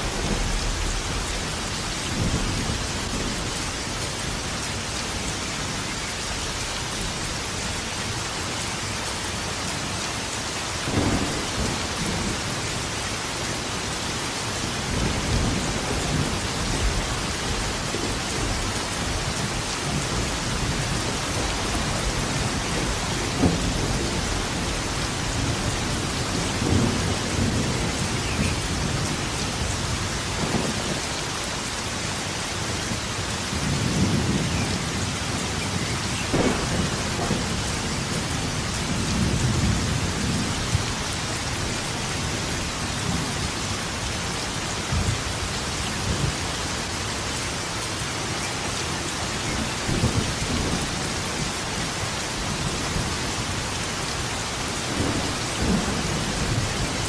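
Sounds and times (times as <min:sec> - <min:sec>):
rolling thunder: 0:00.0 - 0:04.4, 0:10.8 - 0:13.0, 0:14.8 - 0:31.1, 0:33.5 - 0:43.3
heavy rain: 0:00.0 - 0:57.0
sharp thunder cracks: 0:36.3 - 0:37.9.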